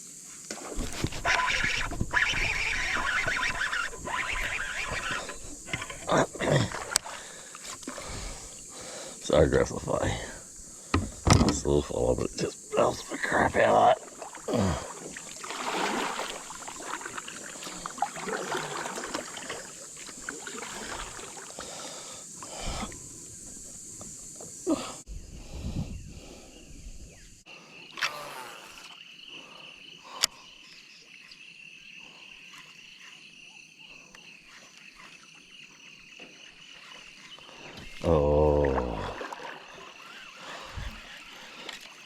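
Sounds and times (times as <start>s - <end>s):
insects droning: 0.0s - 42.0s
clicks and knocks from boat: 10.9s - 11.8s.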